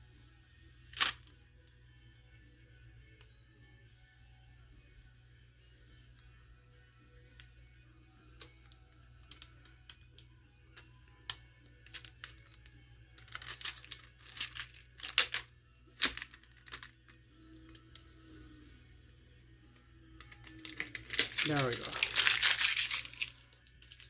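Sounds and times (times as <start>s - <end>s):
plastic film crinkling: 13.2s - 15.4s, 20.2s - 24.0s.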